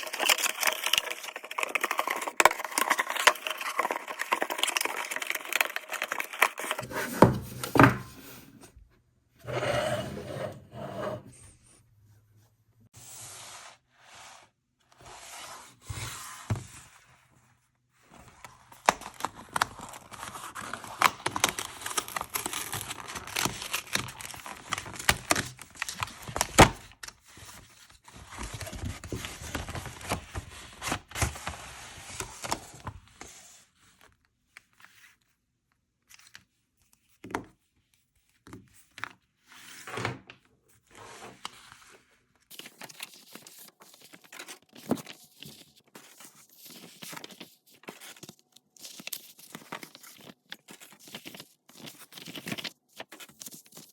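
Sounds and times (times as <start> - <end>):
packaging rustling: 0.0 - 8.5.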